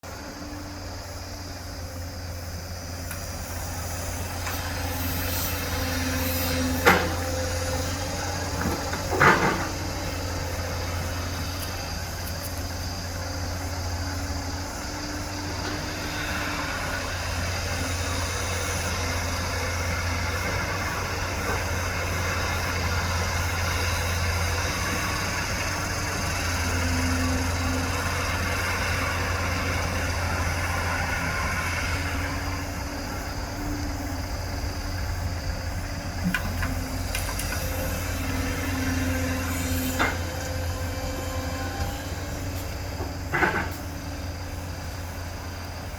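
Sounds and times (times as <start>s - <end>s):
diesel engine droning: 0.0s - 45.9s.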